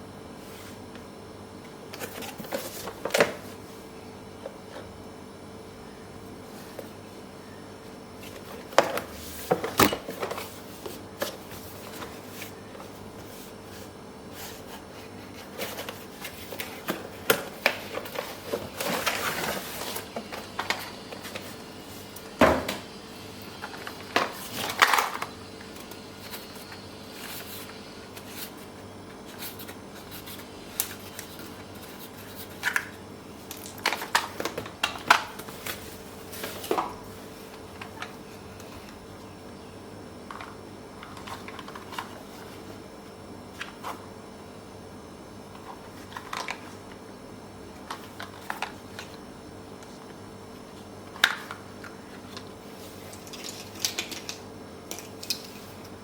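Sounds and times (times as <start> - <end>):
faint steady hum: 0.0 - 56.0
plastic and cardboard rustling: 2.0 - 3.7, 8.2 - 22.8, 23.6 - 39.0, 40.3 - 42.9.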